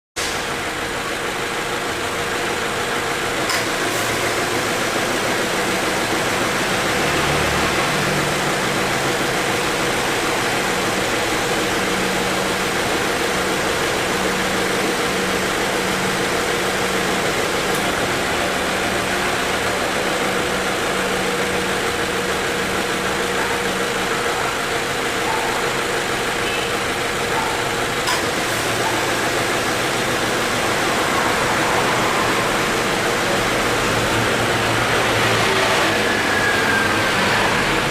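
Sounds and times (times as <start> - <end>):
air conditioning compressor noise: 0.2 - 37.9
car engine idling: 0.2 - 37.9.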